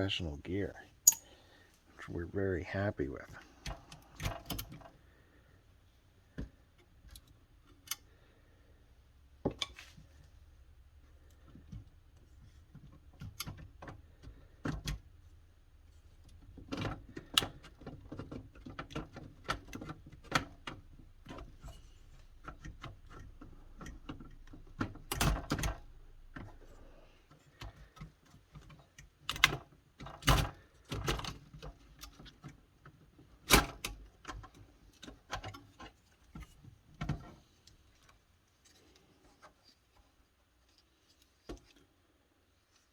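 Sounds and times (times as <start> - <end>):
metal parts clicking and knocking: 1.0 - 1.3.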